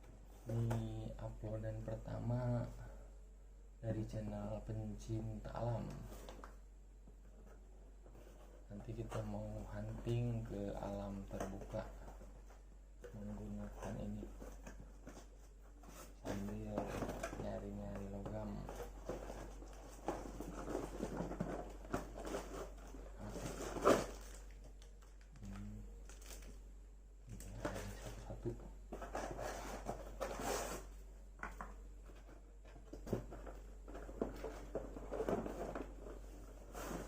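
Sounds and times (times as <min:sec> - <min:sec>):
packaging rustling and crinkling: 0:13.2 - 0:26.6, 0:31.5 - 0:37.0.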